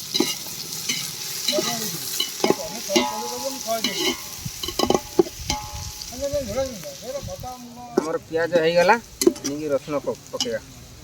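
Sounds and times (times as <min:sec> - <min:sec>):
spatula clacking and scraping pan: 0:00.0 - 0:05.9, 0:07.9 - 0:09.6
onions sizzling in hot oil: 0:00.0 - 0:11.0.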